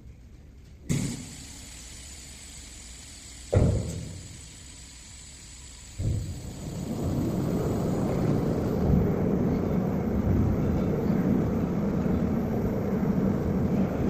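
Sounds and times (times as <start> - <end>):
industrial machinery rumbling: 0.6 - 14.0.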